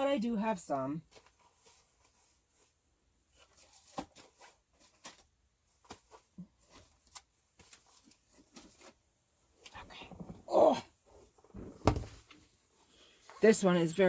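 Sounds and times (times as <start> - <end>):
vinyl sheets rustling and clicking: 1.0 - 9.0.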